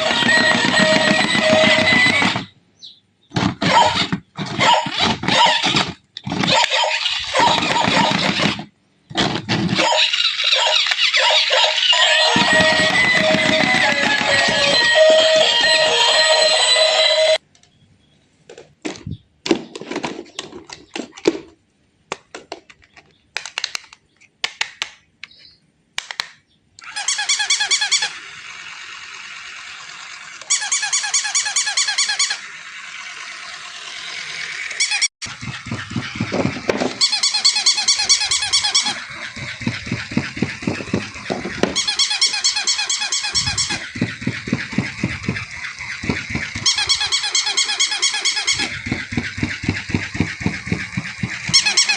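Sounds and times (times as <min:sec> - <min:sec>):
toy clicks and knocks: 0:00.0 - 0:02.5, 0:09.6 - 0:17.2, 0:26.0 - 0:51.9.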